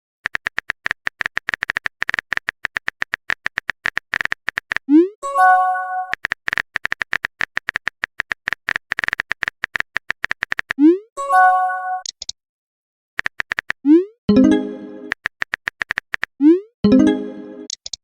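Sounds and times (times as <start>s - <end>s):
rapid typing clicks: 0.2s - 4.8s, 6.1s - 10.8s, 13.2s - 13.8s, 15.0s - 16.4s.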